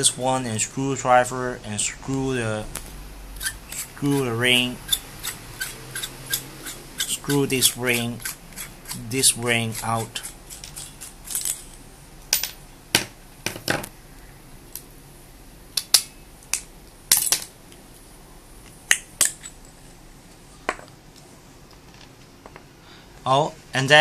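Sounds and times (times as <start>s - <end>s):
metal scraping against tool: 3.4s - 11.8s
small metal parts clicking: 9.8s - 12.5s.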